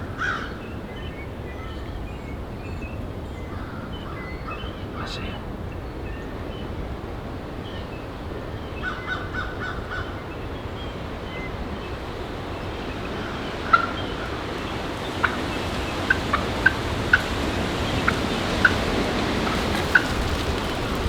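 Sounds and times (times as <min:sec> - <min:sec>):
wind noise on microphone: 0:04.4 - 0:21.0
turkey gobbling: 0:13.0 - 0:21.0.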